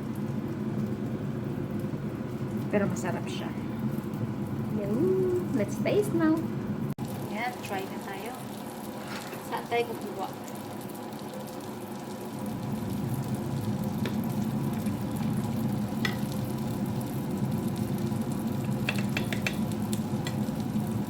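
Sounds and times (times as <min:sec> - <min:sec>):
omelette sizzling in a frying pan: 0:00.0 - 0:21.0
utensil clicking against pan: 0:18.6 - 0:20.5.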